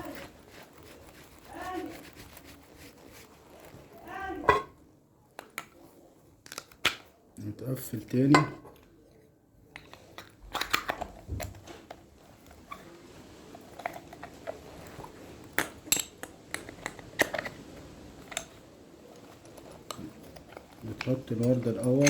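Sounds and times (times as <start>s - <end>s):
metal parts clicking and knocking: 13.8s - 22.0s.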